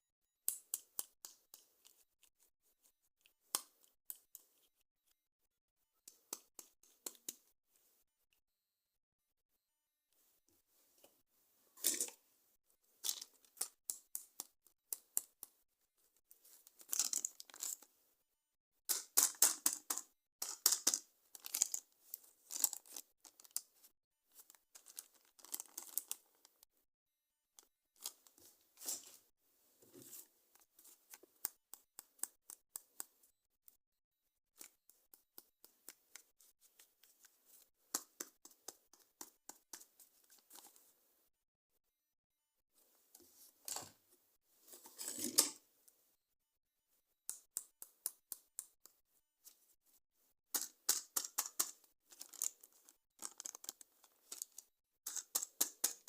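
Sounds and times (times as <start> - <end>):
packaging tearing and crinkling: 52.2 - 55.5.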